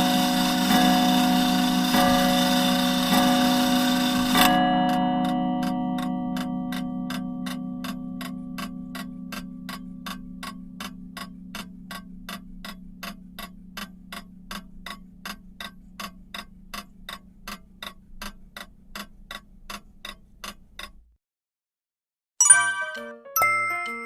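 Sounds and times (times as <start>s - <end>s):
clock ticking: 0.0s - 21.1s
low steady hum: 7.0s - 20.1s.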